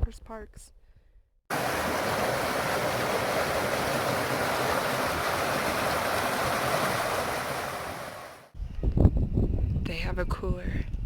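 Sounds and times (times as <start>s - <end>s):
steady rushing noise: 1.5s - 8.5s.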